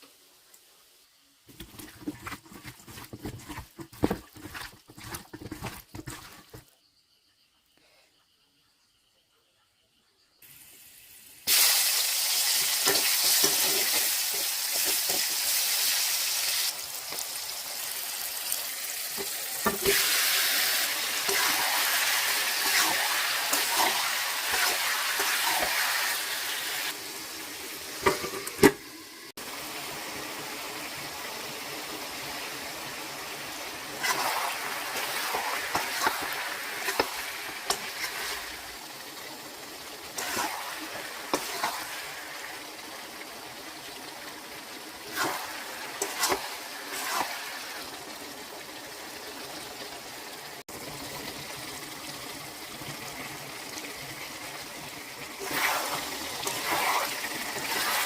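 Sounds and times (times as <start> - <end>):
chicken sizzling in a pan: 0.0 - 6.6, 10.4 - 58.0
spatula scraping metal pan: 21.2 - 26.2, 34.0 - 38.6, 40.2 - 41.9, 45.1 - 47.4, 55.4 - 58.0.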